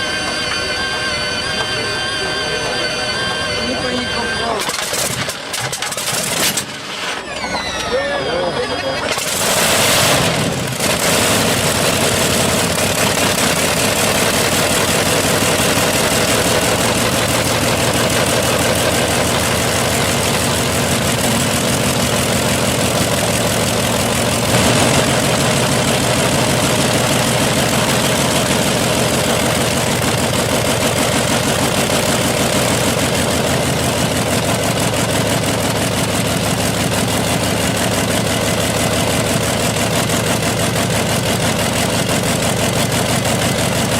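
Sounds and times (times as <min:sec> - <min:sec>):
engine idling: 0:00.0 - 0:43.9
engine pop: 0:19.4 - 0:36.1.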